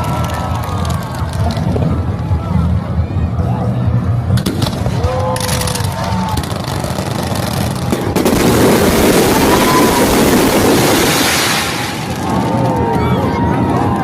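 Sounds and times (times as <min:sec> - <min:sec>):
crowd voices: 0:00.0 - 0:14.0
firework bang: 0:04.4 - 0:12.7
fireworks crackling: 0:04.4 - 0:14.0.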